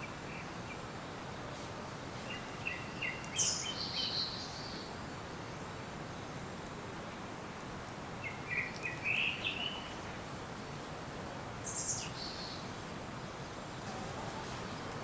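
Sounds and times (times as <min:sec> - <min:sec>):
songbirds chirping: 0:00.0 - 0:15.0
steady ambient hiss: 0:00.0 - 0:15.0.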